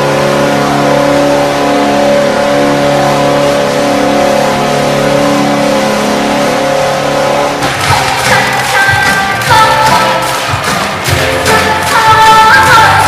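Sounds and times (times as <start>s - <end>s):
goal horn chord: 0.0s - 13.0s.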